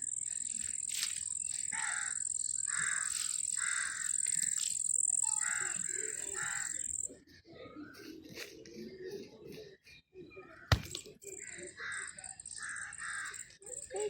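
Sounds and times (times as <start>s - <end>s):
crows cawing: 1.7s - 4.2s, 5.3s - 6.8s, 10.7s - 13.4s.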